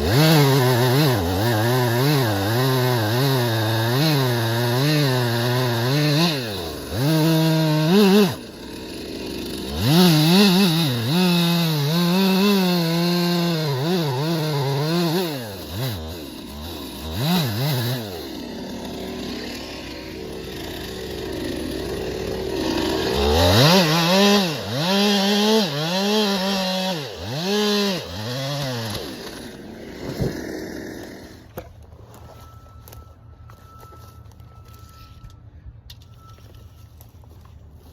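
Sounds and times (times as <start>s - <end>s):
chainsaw revving in a cut: 0.0s - 31.6s.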